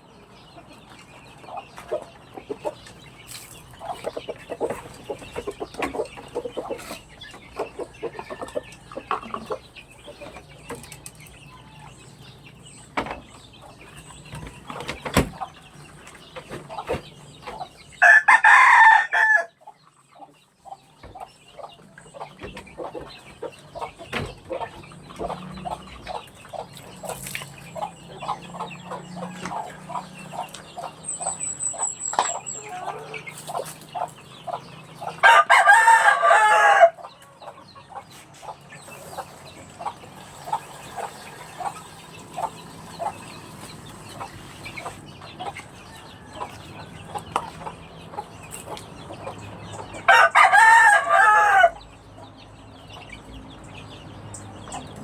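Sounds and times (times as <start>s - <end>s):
chickens clucking: 0.0s - 55.0s
rooster crowing: 18.0s - 19.6s, 35.2s - 37.0s, 50.1s - 51.8s.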